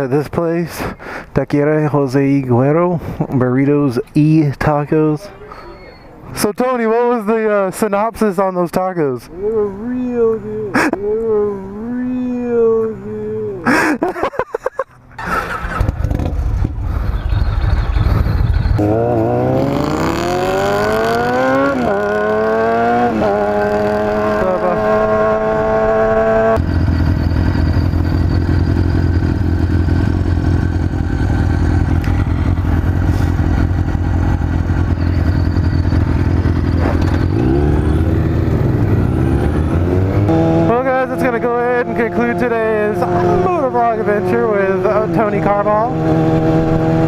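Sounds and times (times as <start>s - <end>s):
motorcycle engine accelerating: 15.1s - 47.0s.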